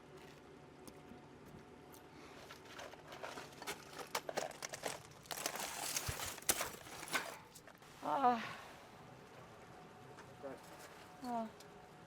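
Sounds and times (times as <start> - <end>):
debris crunching and crinkling: 2.4 - 7.8.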